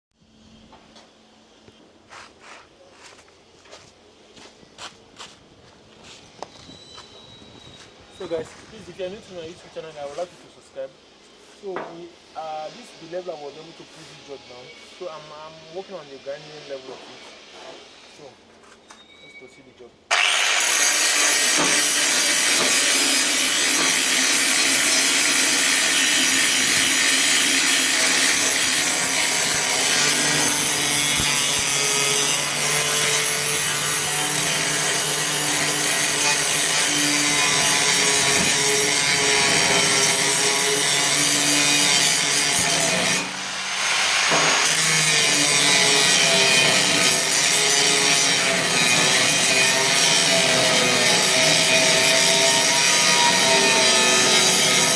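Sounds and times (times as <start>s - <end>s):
angle grinder grinding metal: 20.1s - 54.9s.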